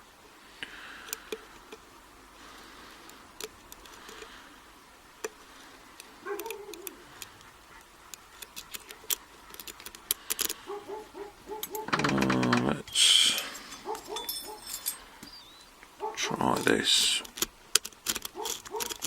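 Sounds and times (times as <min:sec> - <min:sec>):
lock picks clicking in padlock: 0:11.6 - 0:12.7.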